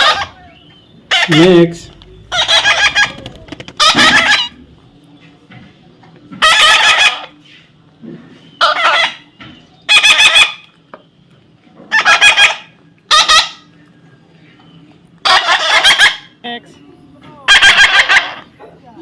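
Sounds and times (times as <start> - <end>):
parrot squawking: 0.0 - 4.7, 6.4 - 7.3, 9.9 - 10.6, 11.9 - 13.7, 15.2 - 16.4, 17.5 - 18.5.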